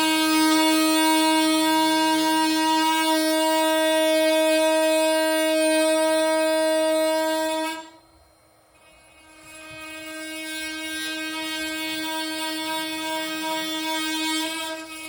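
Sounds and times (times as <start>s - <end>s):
oscillating multi-tool buzzing: 0.0s - 15.0s.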